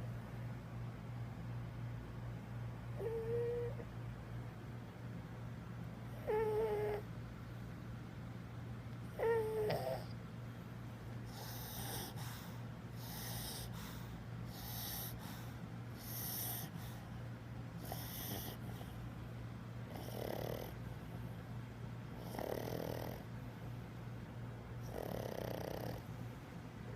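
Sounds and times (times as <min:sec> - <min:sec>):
dog snoring: 0:03.0 - 0:03.8, 0:06.2 - 0:07.1, 0:09.1 - 0:10.2, 0:11.3 - 0:12.2, 0:13.0 - 0:13.7, 0:14.5 - 0:16.7, 0:17.8 - 0:19.0, 0:19.9 - 0:21.1, 0:22.2 - 0:23.3, 0:24.8 - 0:26.2.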